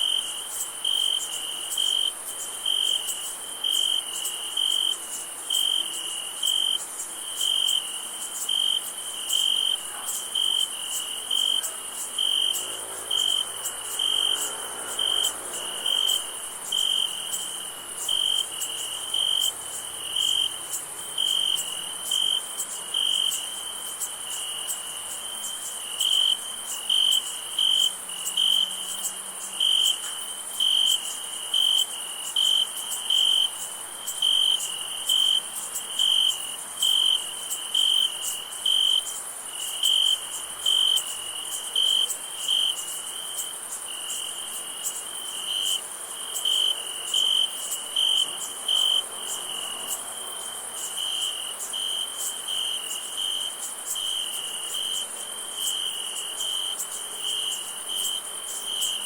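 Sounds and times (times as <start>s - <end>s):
crickets chirping: 0.0s - 59.0s
high-pitched insect trill: 0.0s - 59.0s.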